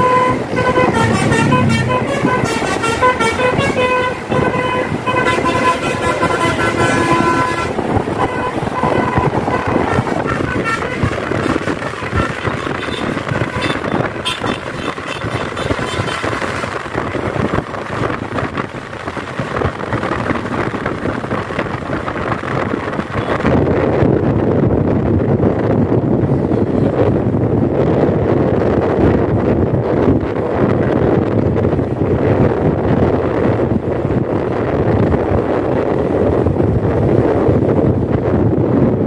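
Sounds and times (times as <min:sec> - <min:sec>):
bus horn playing quick tune: 0:00.0 - 0:16.7
road and wind noise: 0:00.0 - 0:39.0.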